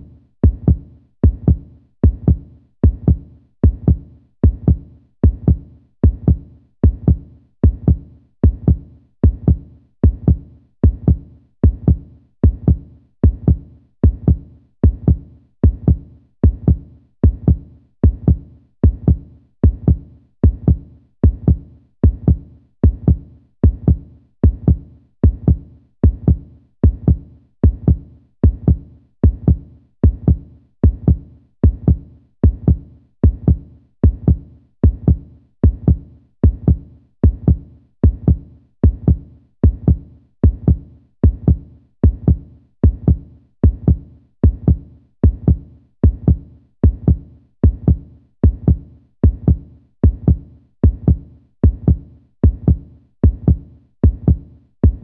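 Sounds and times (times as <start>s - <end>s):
heartbeat thumps: 0.0s - 55.0s.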